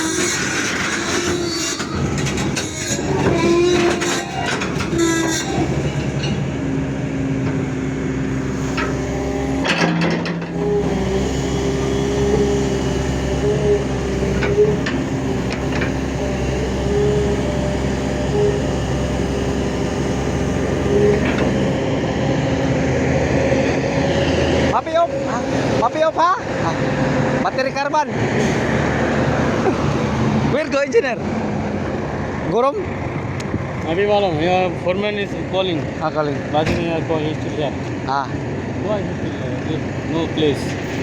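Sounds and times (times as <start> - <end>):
diesel engine droning: 0.0 - 41.0
higher engine tone: 10.4 - 35.9.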